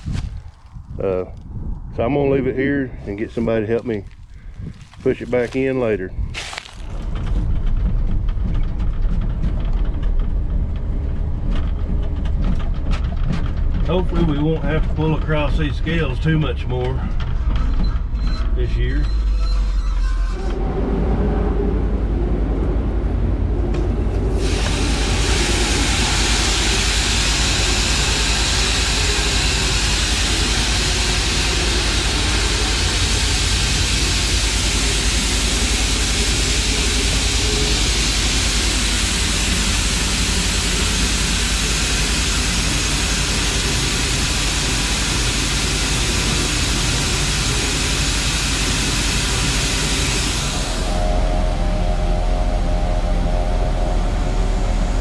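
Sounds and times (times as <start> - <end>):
wind and road noise hiss: 0.0 - 7.8, 21.5 - 55.0
truck engine drone: 6.5 - 55.0.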